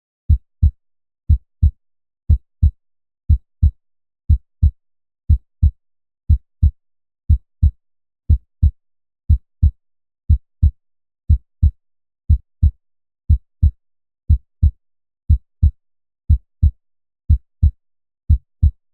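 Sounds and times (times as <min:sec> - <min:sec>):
heartbeat thumps: 0:00.3 - 0:01.7, 0:11.3 - 0:18.9.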